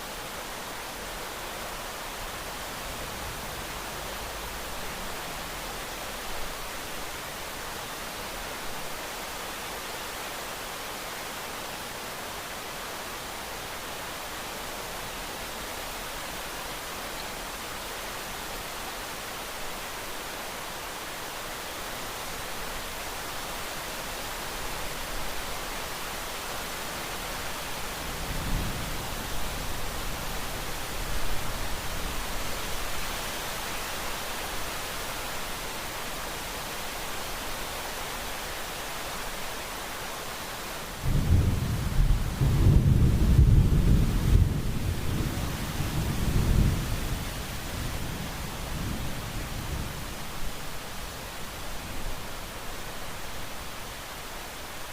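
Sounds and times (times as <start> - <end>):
steady rain hiss: 0.0 - 54.9
thunder rumbling: 41.0 - 47.3.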